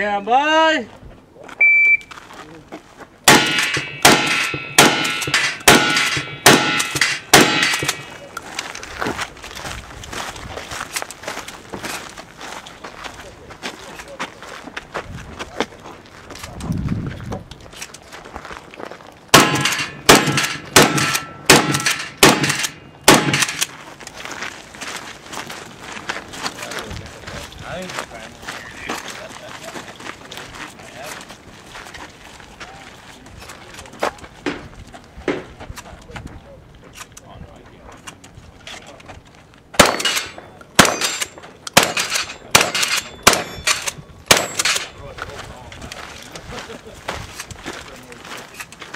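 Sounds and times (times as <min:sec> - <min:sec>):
steel plate ringing: 0:03.3 - 0:08.1, 0:39.8 - 0:45.0
shotgun shots: 0:03.3 - 0:08.2, 0:19.3 - 0:23.7, 0:39.8 - 0:44.9
metallic ring of steel plates: 0:42.0 - 0:45.0.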